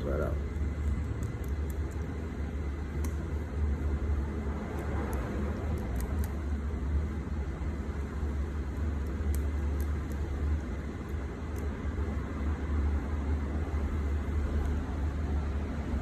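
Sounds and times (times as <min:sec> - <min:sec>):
low background hum: 0:00.0 - 0:16.0.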